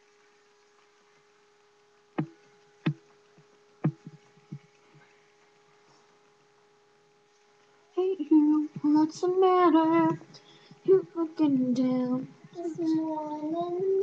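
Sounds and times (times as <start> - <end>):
faint electrical hum: 0.0 - 14.0
short sharp knocks: 2.2 - 3.0, 3.8 - 4.7.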